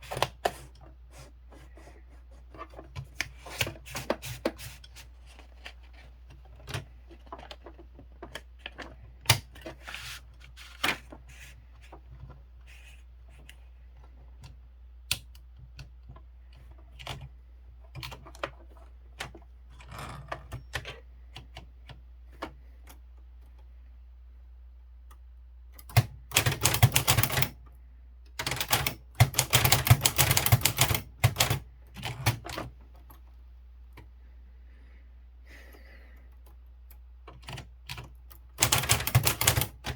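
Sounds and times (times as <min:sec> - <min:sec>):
typewriter key strikes: 0:25.8 - 0:27.5, 0:28.4 - 0:32.6, 0:38.6 - 0:39.9
fast typewriter clattering: 0:25.9 - 0:27.6, 0:28.4 - 0:32.6, 0:38.6 - 0:39.9.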